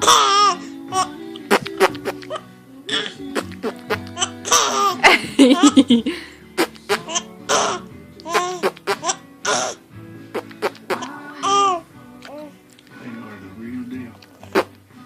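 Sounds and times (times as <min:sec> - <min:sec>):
baby giggling: 0:00.0 - 0:02.4, 0:03.0 - 0:09.8, 0:10.4 - 0:12.5
baby squealing: 0:06.6 - 0:09.8.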